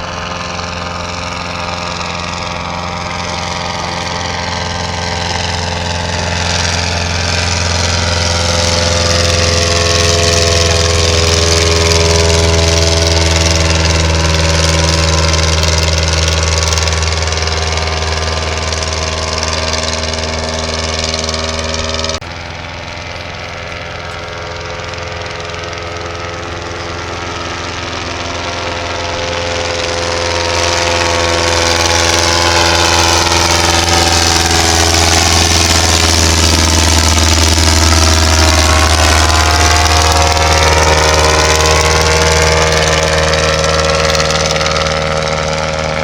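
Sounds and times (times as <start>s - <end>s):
biplane engine droning past: 0.0s - 46.0s.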